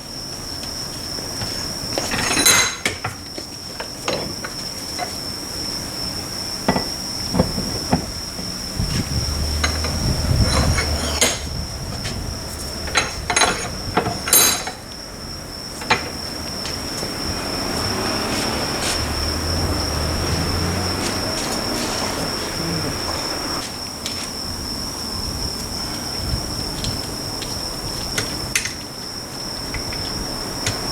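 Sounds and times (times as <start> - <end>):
metal parts clinking and knocking: 2.0 - 3.1, 9.6 - 11.5, 12.8 - 14.8.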